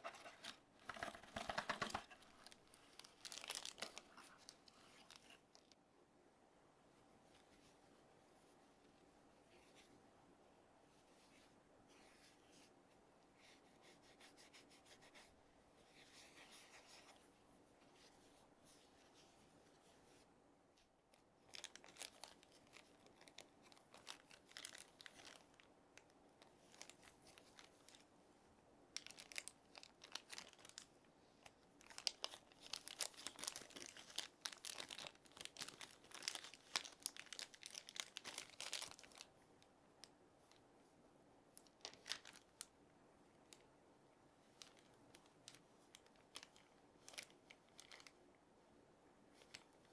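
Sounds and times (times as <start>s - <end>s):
packaging crinkling and tearing: 0.0s - 5.8s, 21.5s - 25.7s, 29.0s - 39.3s, 41.6s - 42.7s, 44.6s - 48.2s
packaging rustling: 0.0s - 5.8s, 21.5s - 25.6s, 29.0s - 30.9s, 31.8s - 39.3s, 41.8s - 42.6s.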